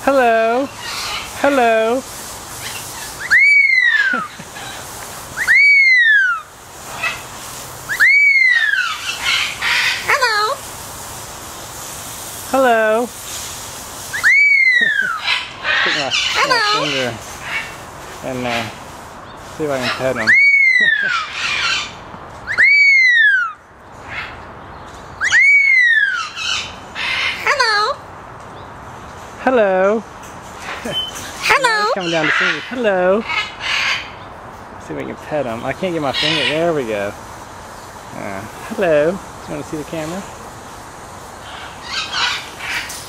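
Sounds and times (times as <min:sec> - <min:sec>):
rough parrot calls: 0:02.6 - 0:07.3, 0:07.9 - 0:10.6, 0:14.1 - 0:17.8, 0:19.8 - 0:24.4, 0:25.2 - 0:28.0, 0:30.6 - 0:34.2, 0:41.4 - 0:43.0
parrot whistling: 0:03.0 - 0:04.3, 0:05.4 - 0:06.5, 0:07.9 - 0:10.4, 0:14.1 - 0:15.4, 0:22.4 - 0:23.6, 0:25.2 - 0:26.6.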